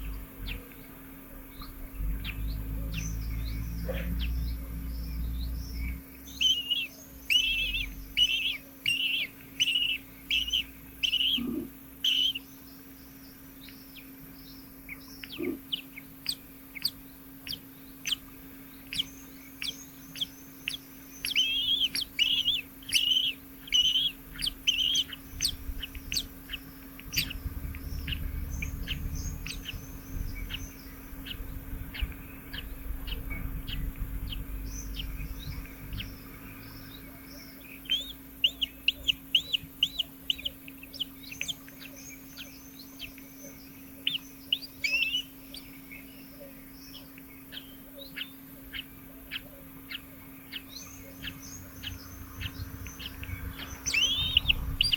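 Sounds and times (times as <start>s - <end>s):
faint steady hum: 0.0s - 54.9s
nestlings chirping: 0.0s - 54.9s
low rumble: 1.3s - 6.4s, 24.1s - 37.2s, 51.4s - 54.9s.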